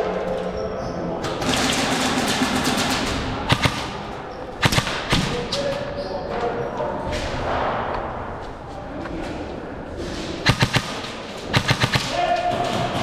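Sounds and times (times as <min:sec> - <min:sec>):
airsoft gun shots: 0:03.4 - 0:05.6, 0:10.4 - 0:12.4.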